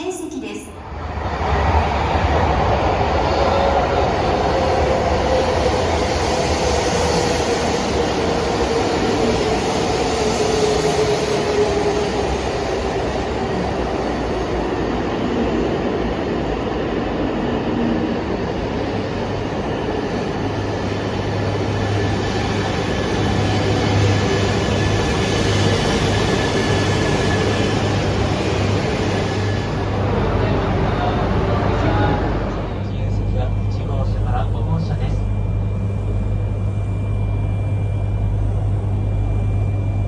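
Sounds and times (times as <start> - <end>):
train running: 0.0 - 40.0.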